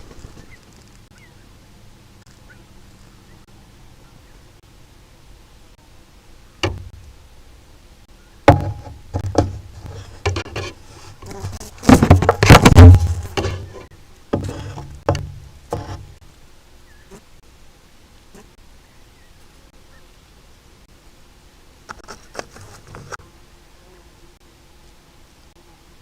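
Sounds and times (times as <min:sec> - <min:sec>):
loud clattering: 0:11.8 - 0:13.8.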